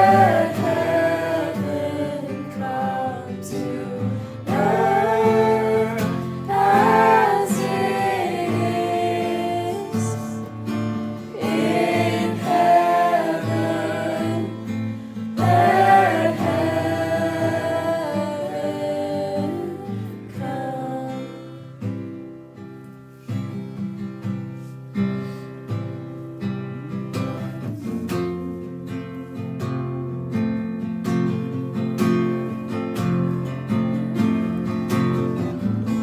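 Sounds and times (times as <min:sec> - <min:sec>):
people singing gospel song: 0:00.0 - 0:10.5, 0:11.2 - 0:21.0
acoustic guitar: 0:00.0 - 0:36.0.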